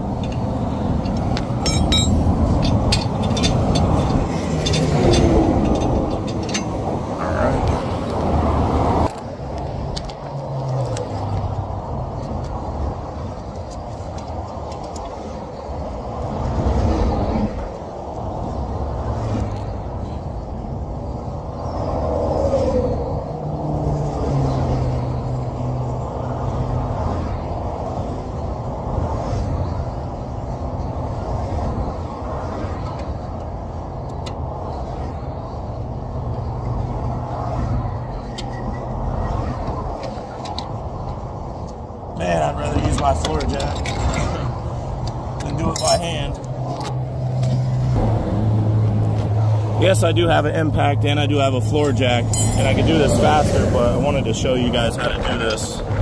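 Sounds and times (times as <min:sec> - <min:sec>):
lug wrench clinking on lug nuts: 0:00.0 - 0:07.2, 0:45.0 - 0:46.9, 0:51.7 - 0:52.9
highway traffic roar: 0:00.0 - 0:56.0.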